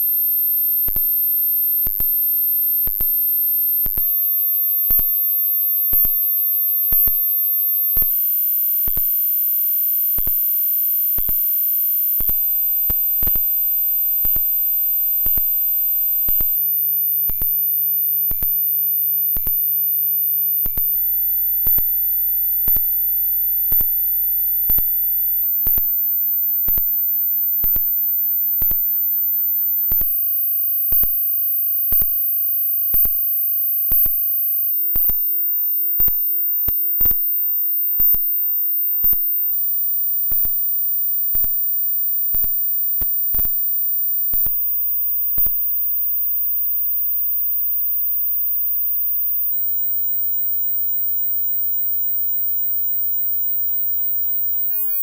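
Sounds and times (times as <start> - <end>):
high sine tone: 0.0 - 55.0
clicks: 41.4 - 41.6, 42.4 - 43.6, 44.3 - 44.7.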